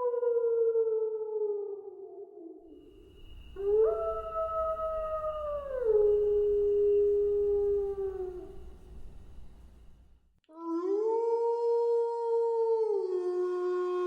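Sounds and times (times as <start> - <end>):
wolf howling: 2.7 - 9.8.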